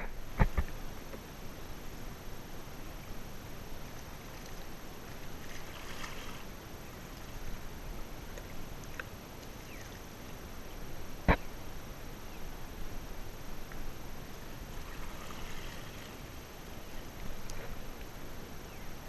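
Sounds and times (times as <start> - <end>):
water lapping against a hull: 2.6 - 11.8, 12.8 - 18.4.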